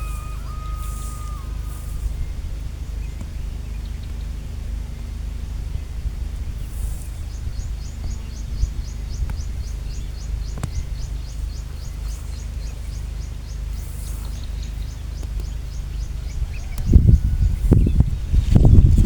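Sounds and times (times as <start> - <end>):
bird chirping high and thin: 0.0 - 3.8
steady low rumble: 0.0 - 19.0.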